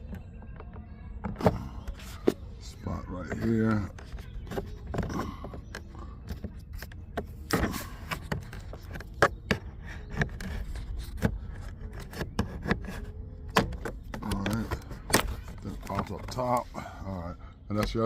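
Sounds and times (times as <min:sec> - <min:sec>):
screwdriver scraping plastic panel: 0:03.2 - 0:16.4
clips clicking and knocking: 0:03.3 - 0:16.7.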